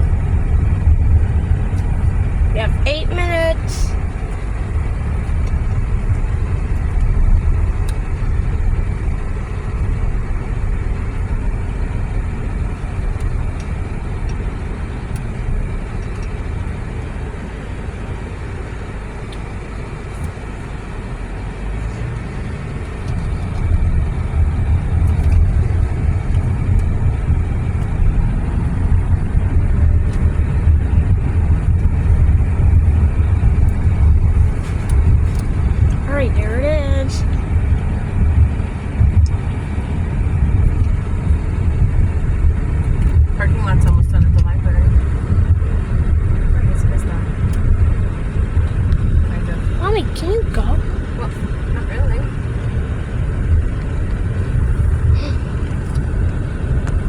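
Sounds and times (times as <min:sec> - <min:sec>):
car road and engine rumble: 0:00.0 - 0:57.0.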